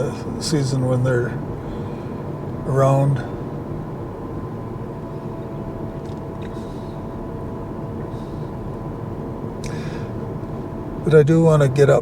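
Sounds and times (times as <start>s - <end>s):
faint steady hum: 0.0s - 12.0s
road and tyre noise in car cabin: 0.0s - 12.0s.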